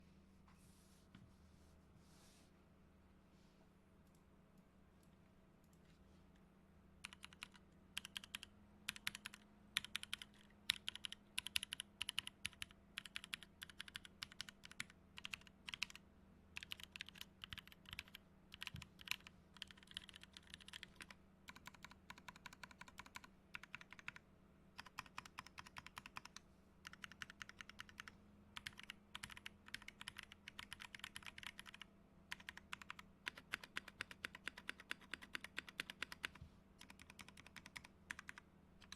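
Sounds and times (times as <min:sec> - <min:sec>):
mechanical keyboard typing: 0:07.0 - 0:16.0, 0:16.6 - 0:24.2, 0:24.8 - 0:38.9.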